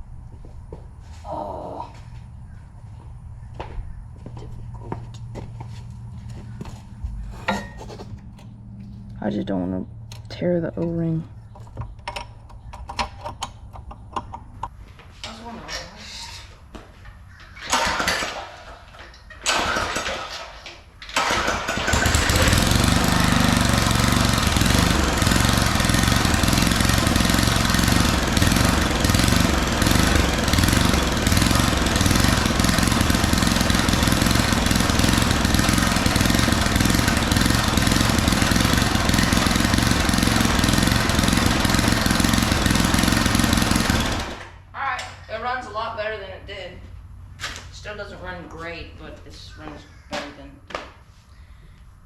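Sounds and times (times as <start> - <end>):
person talking: 9.2 - 11.3, 44.8 - 46.8
recoil starter pulls: 17.6 - 44.6
small gas engine running: 19.4 - 20.4, 21.1 - 44.6.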